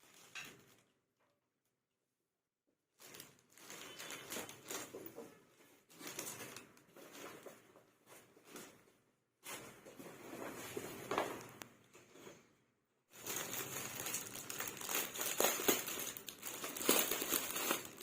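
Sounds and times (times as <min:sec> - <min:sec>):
packaging rustling and crinkling: 0:02.9 - 0:12.4, 0:13.1 - 0:18.0.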